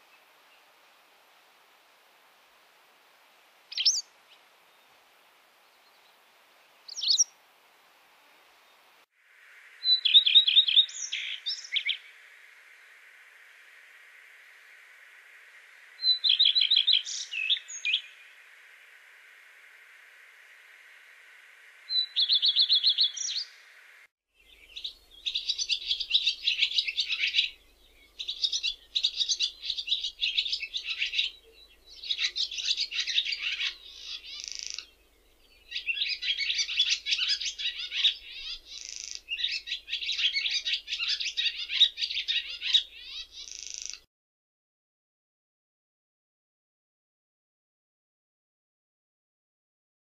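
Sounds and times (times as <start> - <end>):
songbird trill: 3.7 - 5.0, 5.6 - 7.4, 9.6 - 44.1
twittering birdsong: 3.7 - 5.0, 5.6 - 7.4, 9.5 - 44.1.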